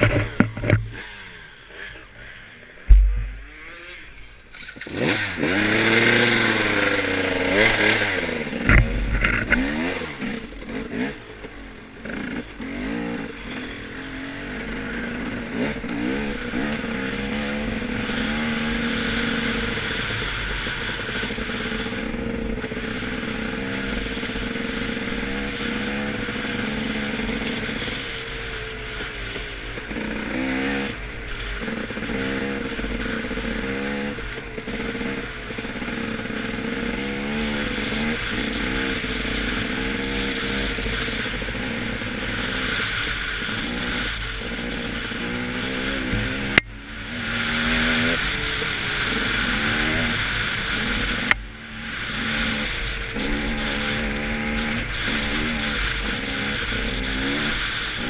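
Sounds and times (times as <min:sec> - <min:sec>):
dirt bike engine revving: 0:00.0 - 0:58.0
sharp knocks: 0:02.9 - 0:03.5.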